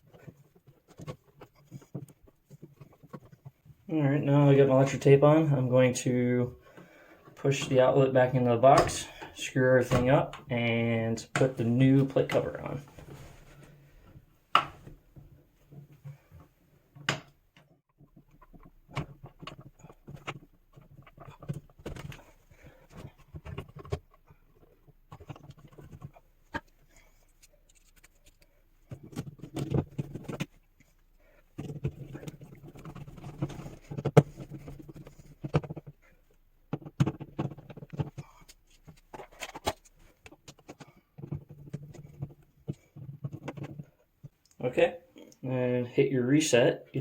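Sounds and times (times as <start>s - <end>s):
outlet clicks and scrapes: 18.1s - 44.5s.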